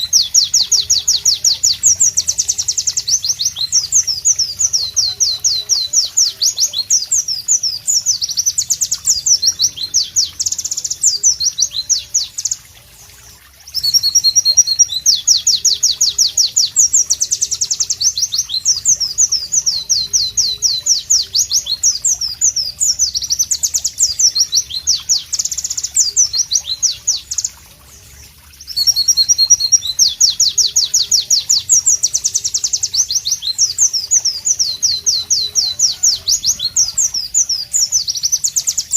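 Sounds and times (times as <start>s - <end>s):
bird singing high chirps: 0.0s - 38.9s.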